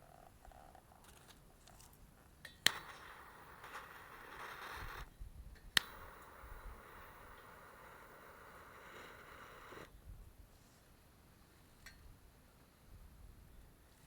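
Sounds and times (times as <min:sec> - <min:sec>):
lighter sparking clicks: 0:02.4 - 0:09.9
gas torch hissing: 0:02.6 - 0:05.1, 0:05.7 - 0:09.9.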